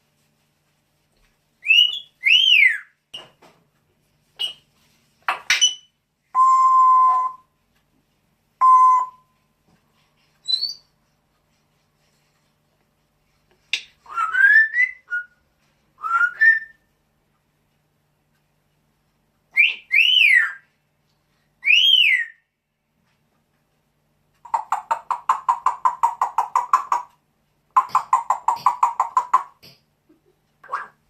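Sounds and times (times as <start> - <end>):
bird whistles and calls: 1.6 - 2.9, 10.4 - 10.9, 13.7 - 15.4, 16.0 - 16.9, 19.5 - 20.6, 21.6 - 22.4.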